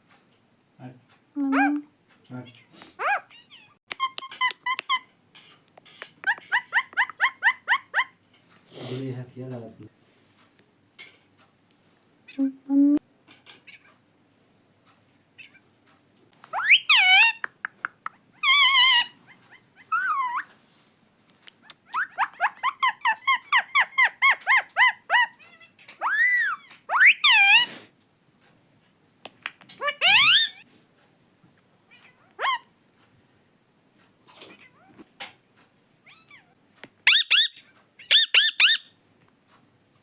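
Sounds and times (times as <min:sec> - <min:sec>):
parrot calling and chirping: 0:01.4 - 0:01.8, 0:03.0 - 0:05.2, 0:06.0 - 0:08.2, 0:16.5 - 0:20.5, 0:21.6 - 0:27.7, 0:29.8 - 0:30.7, 0:32.0 - 0:32.7, 0:36.1 - 0:39.0.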